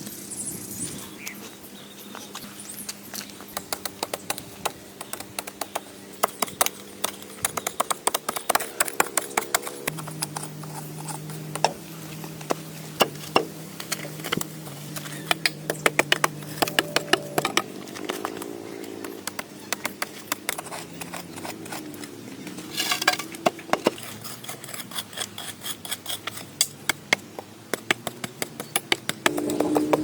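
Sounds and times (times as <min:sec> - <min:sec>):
sharp knocks and taps: 0:15.3 - 0:18.5, 0:26.9 - 0:30.0.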